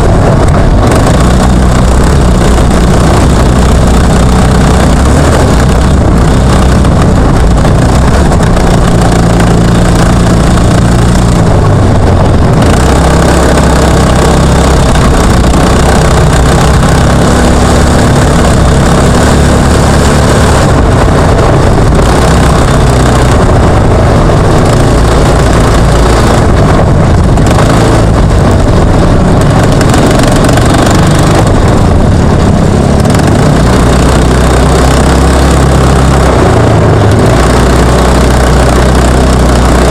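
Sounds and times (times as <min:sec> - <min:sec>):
kart engine revving: 0:00.0 - 0:39.9.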